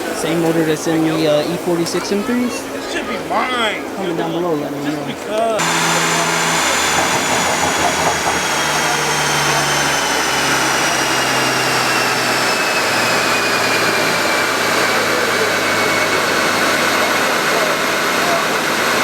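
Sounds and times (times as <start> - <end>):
engine running with whine: 5.6 - 19.0.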